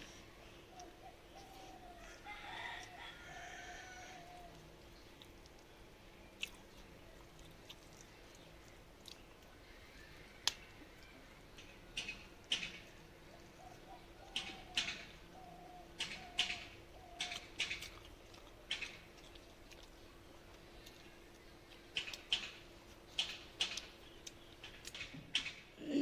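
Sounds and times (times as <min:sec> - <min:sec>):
faint steady hum: 0:00.0 - 0:26.0
rooster crowing: 0:01.9 - 0:04.6.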